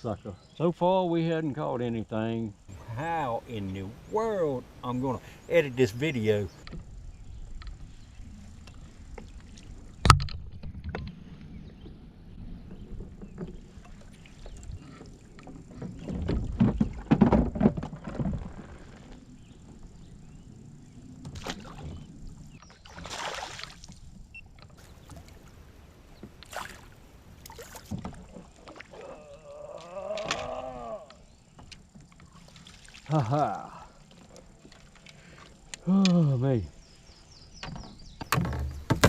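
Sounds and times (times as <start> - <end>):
knocking on kayak hull: 38.2 - 39.0.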